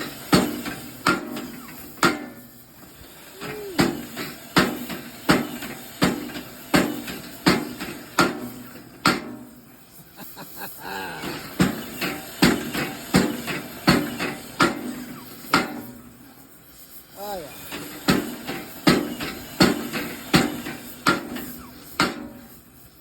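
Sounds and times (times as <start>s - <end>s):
power hammer striking metal: 0.0s - 2.4s, 3.4s - 9.5s, 11.2s - 16.0s, 17.7s - 22.5s.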